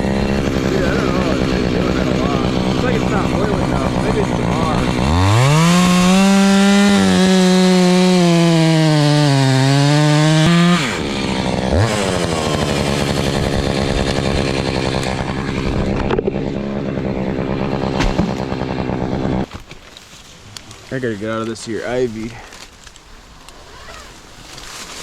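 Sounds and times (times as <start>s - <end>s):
chainsaw running: 0.0s - 19.5s.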